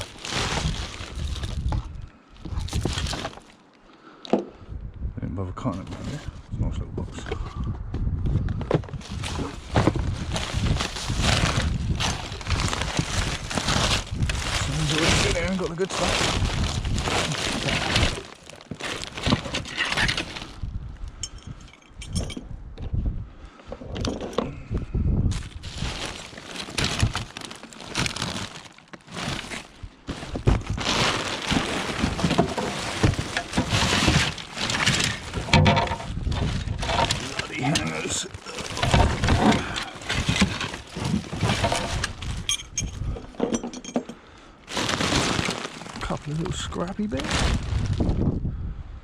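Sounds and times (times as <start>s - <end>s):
rustling: 0.0s - 3.5s, 8.9s - 20.7s, 25.3s - 43.8s, 44.6s - 48.2s
hands rummaging through junk: 0.0s - 3.6s, 8.7s - 22.4s, 25.3s - 48.0s
wind buffeting microphone: 0.4s - 3.1s, 4.6s - 5.6s, 6.2s - 18.0s, 20.0s - 26.2s, 35.1s - 37.2s, 41.6s - 43.4s, 46.1s - 49.0s
small knocks and clatters: 29.4s - 37.9s, 38.6s - 44.2s.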